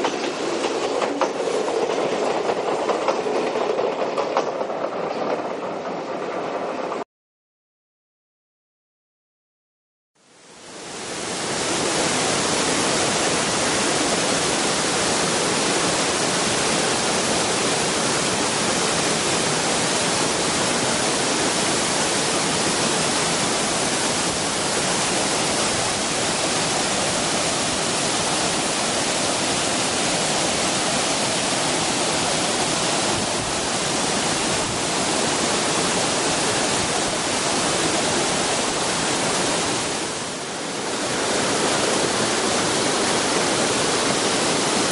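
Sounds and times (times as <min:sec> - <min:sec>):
waterfall rushing: 0:10.5 - 0:44.9.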